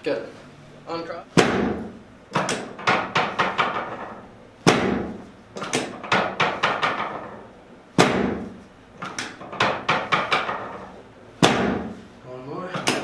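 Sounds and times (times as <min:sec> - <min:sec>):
loud knocks: 0:01.4 - 0:12.0, 0:12.7 - 0:13.0.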